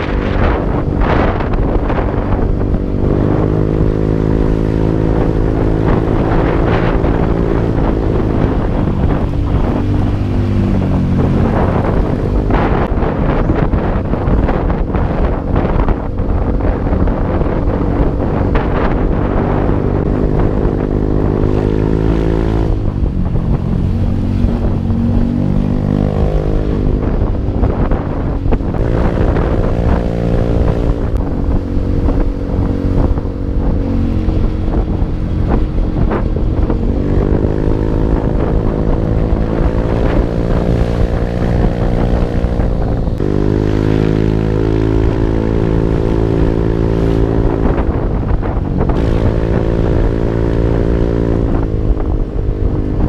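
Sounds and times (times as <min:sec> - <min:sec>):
motorcycle engine revving: 0:00.0 - 0:53.0
wind buffeting microphone: 0:00.0 - 0:53.0.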